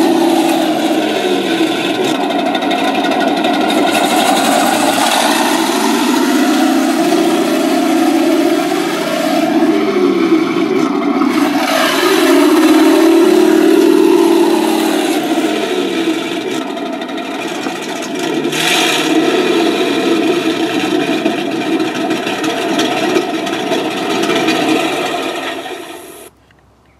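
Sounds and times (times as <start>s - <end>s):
engine revving through exhaust: 0.0s - 26.3s.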